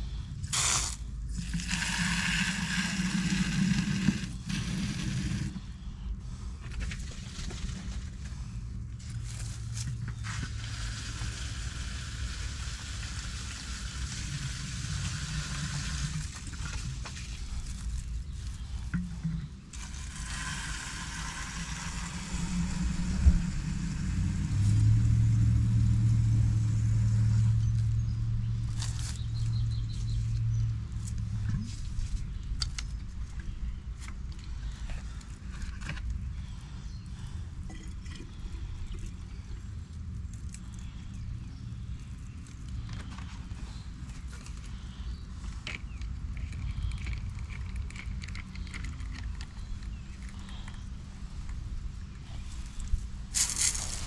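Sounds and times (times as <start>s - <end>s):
water spraying with hiss: 0.0s - 5.6s, 10.2s - 17.2s, 19.8s - 27.4s
steady low hum: 0.0s - 54.0s.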